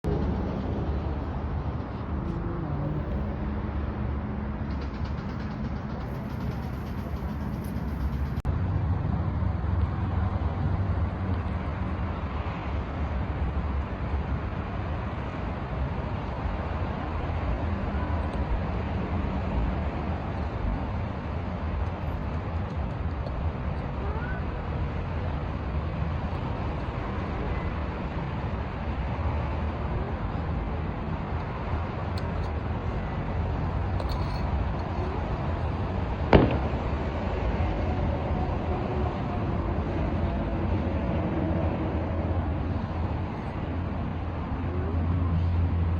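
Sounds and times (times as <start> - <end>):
low outdoor rumble: 0.0 - 45.9.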